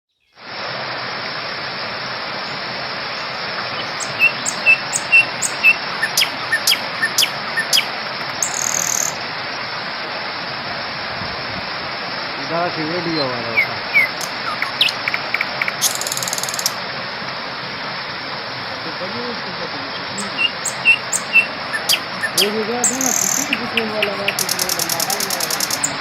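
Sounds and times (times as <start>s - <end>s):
waterfall rushing: 0.4s - 26.0s
birds chirping: 3.1s - 9.2s, 12.9s - 16.8s, 19.0s - 26.0s.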